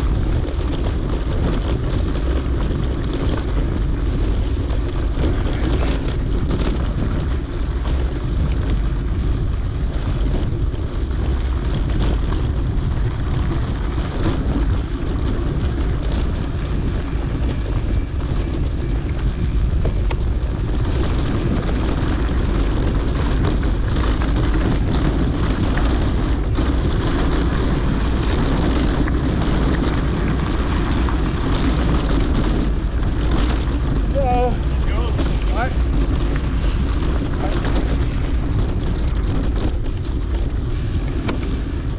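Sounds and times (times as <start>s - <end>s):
bike clicks and rattles: 0.0s - 41.9s
wind rumble on microphone: 0.0s - 41.9s.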